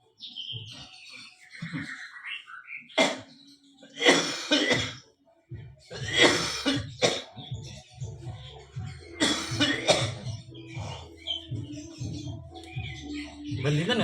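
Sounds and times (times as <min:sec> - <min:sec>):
music: 0:00.0 - 0:14.0
man coughing hard: 0:04.0 - 0:05.0, 0:05.9 - 0:07.4, 0:09.2 - 0:10.3.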